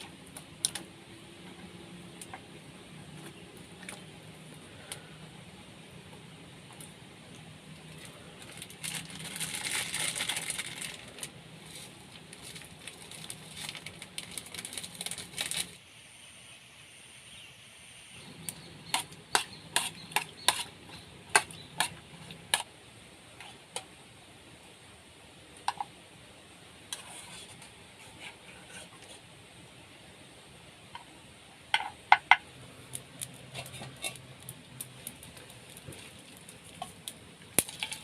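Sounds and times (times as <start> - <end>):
rustling: 8.0 - 15.8, 33.2 - 38.0.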